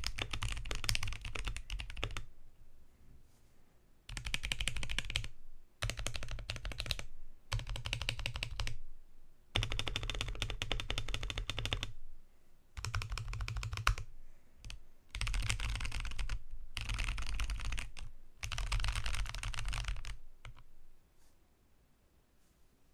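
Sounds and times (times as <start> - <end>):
fast typing on mechanical keyboard: 0.0 - 2.3, 4.1 - 8.8, 9.6 - 12.0, 12.8 - 20.6.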